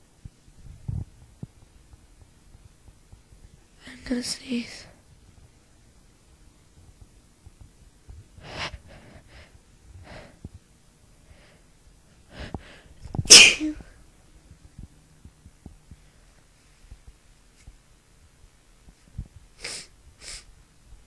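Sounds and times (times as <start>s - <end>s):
woman sneezing: 13.3s - 13.8s.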